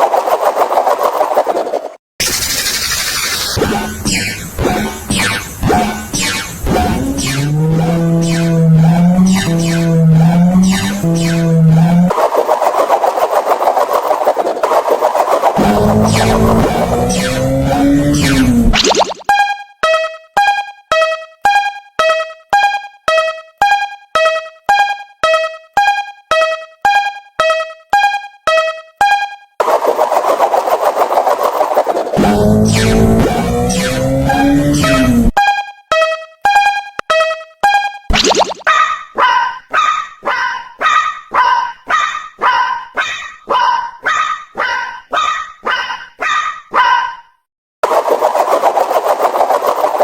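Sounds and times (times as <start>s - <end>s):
falling sweep: 6.2s - 19.2s, 29.6s - 35.3s, 47.8s - 50.0s
two-tone barks: 38.6s - 47.3s.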